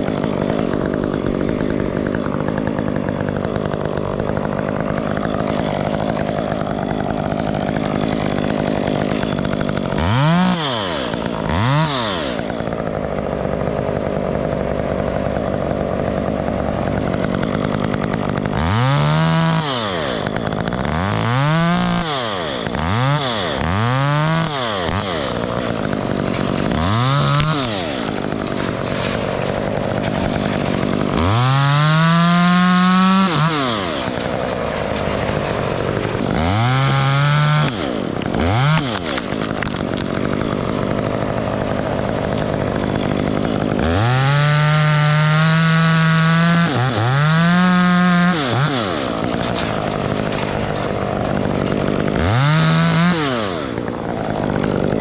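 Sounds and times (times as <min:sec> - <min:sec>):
chainsaw engine revving: 0:00.0 - 0:55.0.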